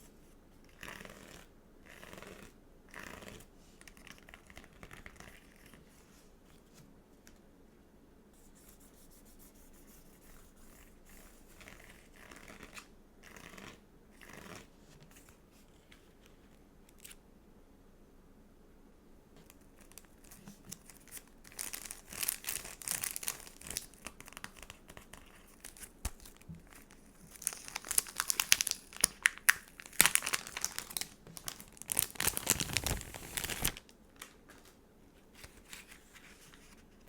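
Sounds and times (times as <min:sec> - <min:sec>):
stickers peeling and crinkling: 0:19.4 - 0:34.7.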